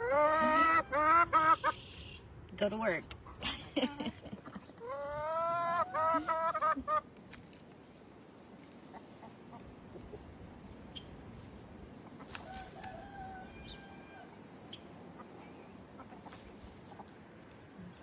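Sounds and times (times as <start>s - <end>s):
chicken drawn-out call: 0.0s - 2.1s, 4.8s - 7.0s, 12.2s - 14.4s
chickens clucking quietly: 0.0s - 2.2s, 3.2s - 7.2s, 8.1s - 18.0s.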